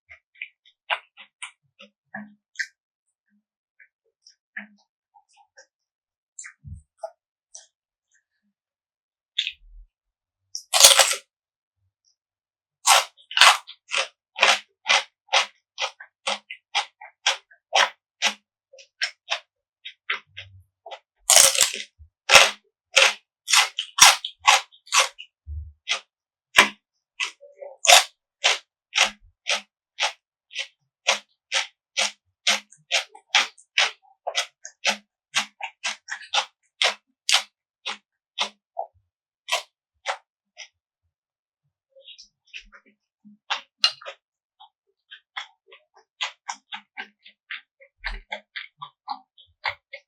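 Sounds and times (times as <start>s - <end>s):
crunchy eating: 10.6s - 11.2s, 12.9s - 18.4s, 21.3s - 25.2s, 25.9s - 38.6s, 39.5s - 40.2s, 43.5s - 44.2s.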